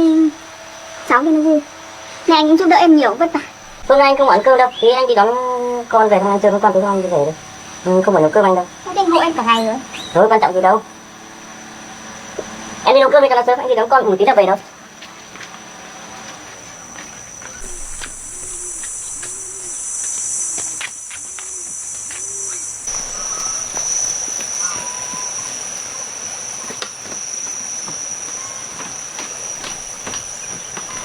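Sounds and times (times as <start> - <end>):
insects shrilling: 0.0 - 31.0
rising-and-falling calls: 3.4 - 12.6, 16.4 - 31.0.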